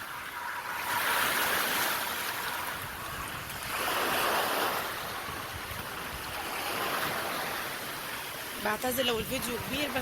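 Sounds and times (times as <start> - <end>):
rushing splashing water: 0.0 - 10.0.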